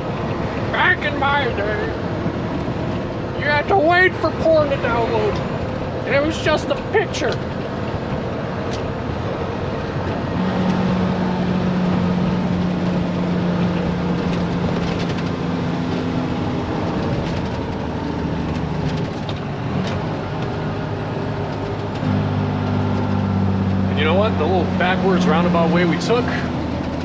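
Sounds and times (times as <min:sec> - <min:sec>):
road noise: 0:00.0 - 0:27.0
truck engine running: 0:00.0 - 0:27.0.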